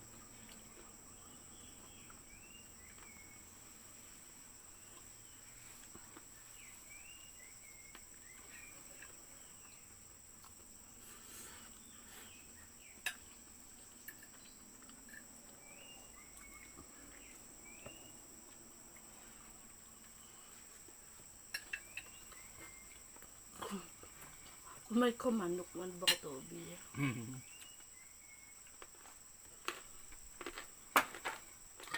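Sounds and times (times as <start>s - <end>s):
insects droning: 0.0s - 31.9s
bird chirps: 15.6s - 18.2s, 21.6s - 23.1s.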